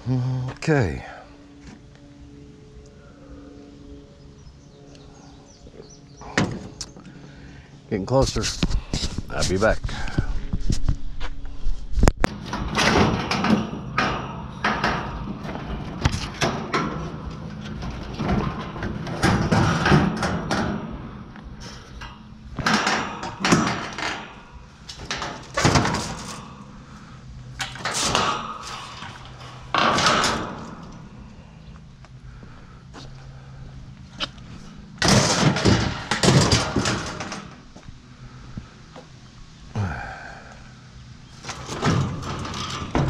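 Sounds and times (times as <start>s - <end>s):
steady low hum: 0.0s - 43.0s
metal scrap knocking and scraping: 12.0s - 31.2s, 35.0s - 37.7s, 41.4s - 43.0s.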